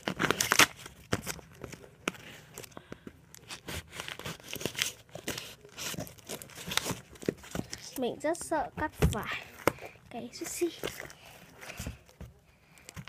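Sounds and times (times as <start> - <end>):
packaging slit and torn: 0.0 - 1.4
packaging crinkling: 0.0 - 8.0.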